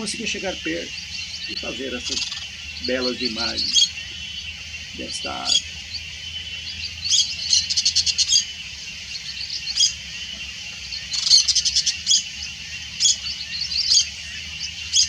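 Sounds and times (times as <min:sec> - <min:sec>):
sharp high bird notes: 0:00.0 - 0:10.0
bird rattling trills: 0:00.0 - 0:15.0
steady high-pitched hum: 0:00.0 - 0:15.0.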